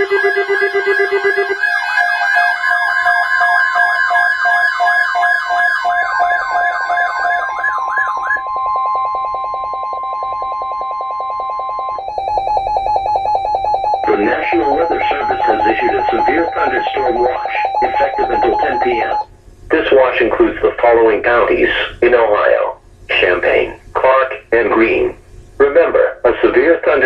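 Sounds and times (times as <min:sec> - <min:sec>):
warbling siren tones: 0:00.0 - 0:19.3
steady high alert tone: 0:00.0 - 0:21.6
rapid pulsing tone: 0:00.0 - 0:22.0.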